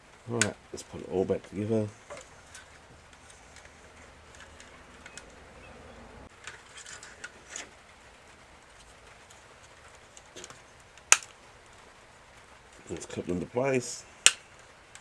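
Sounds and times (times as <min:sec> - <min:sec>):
low hum: 0:00.0 - 0:06.3
plastic parts clicking: 0:01.4 - 0:05.6, 0:08.8 - 0:11.4, 0:14.2 - 0:15.0.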